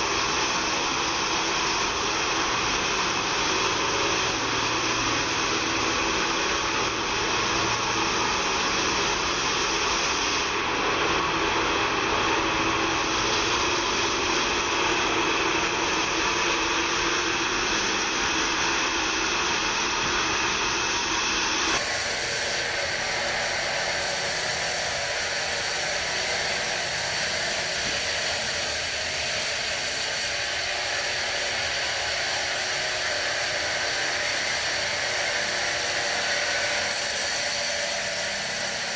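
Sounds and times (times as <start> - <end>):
band saw running: 21.6 - 38.9.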